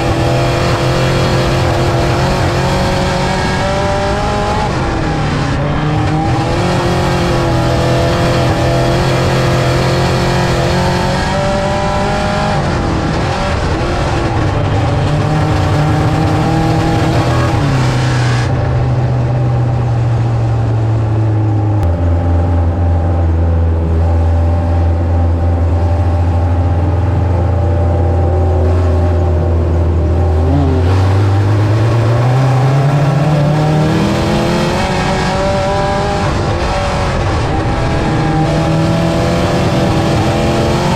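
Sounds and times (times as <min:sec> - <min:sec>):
race car engine revving: 0:00.0 - 0:40.9.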